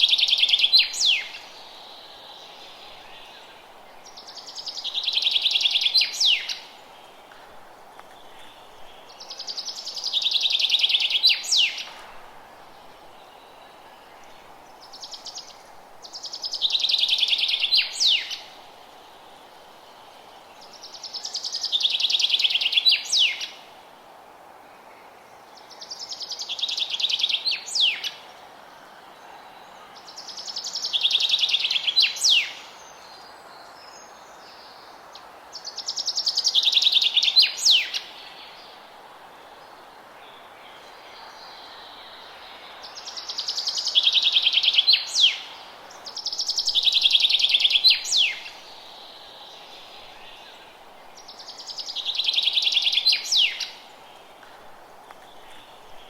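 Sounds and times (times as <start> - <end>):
songbird trilling song: 0.0 - 7.1, 8.0 - 12.0, 13.0 - 18.6, 20.6 - 23.6, 29.2 - 34.9, 35.6 - 38.8, 40.2 - 54.3
faint steady hiss: 0.0 - 56.0.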